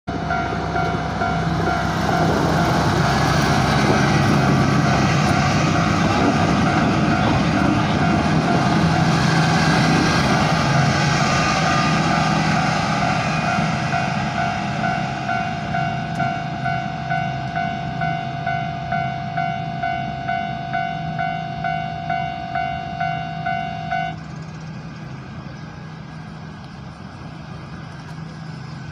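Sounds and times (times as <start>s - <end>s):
diesel locomotive engine hum: 0.0s - 28.9s
level crossing bell ringing: 13.6s - 24.2s.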